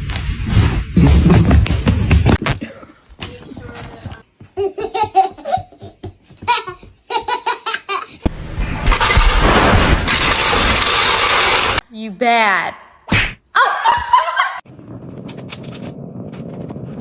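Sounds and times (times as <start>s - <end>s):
high-pitched laughter: 13.6s - 14.6s.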